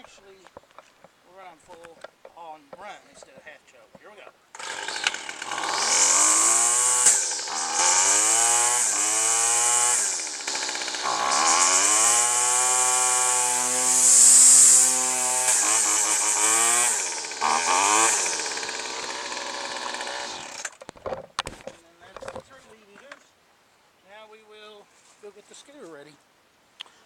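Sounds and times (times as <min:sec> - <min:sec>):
string trimmer engine revving: 0:04.5 - 0:20.8.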